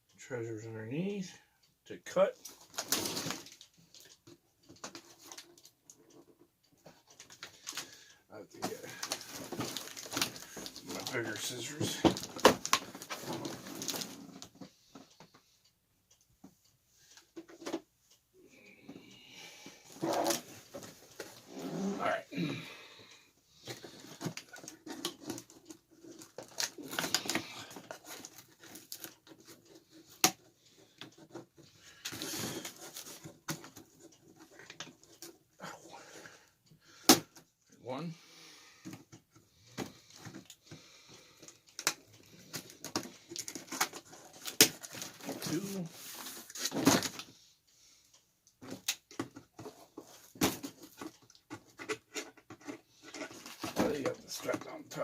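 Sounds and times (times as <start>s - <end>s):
rustling cardboard and plastic: 2.3s - 15.4s, 19.8s - 22.6s, 23.5s - 36.2s, 38.8s - 47.4s, 48.5s - 55.0s.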